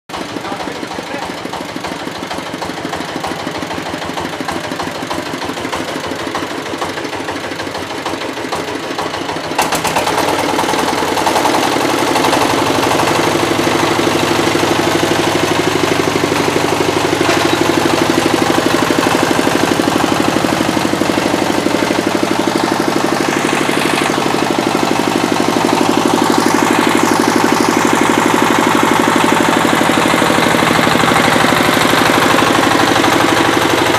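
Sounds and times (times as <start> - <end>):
hydraulic power unit droning: 10.5 - 33.9.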